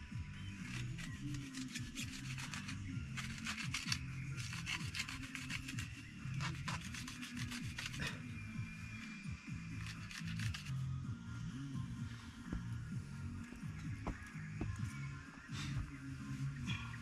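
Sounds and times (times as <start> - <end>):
background music: 0.0 - 17.0
plastic film rustling and scraping: 0.6 - 8.1.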